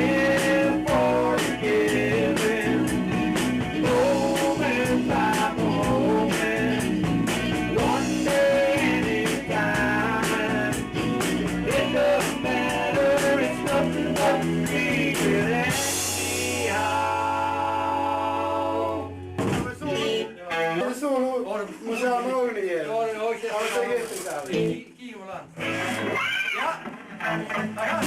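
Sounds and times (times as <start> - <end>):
person singing: 0.0 - 19.2
drums: 0.0 - 20.7, 23.6 - 28.0
electric guitar: 0.0 - 21.0, 24.0 - 28.0.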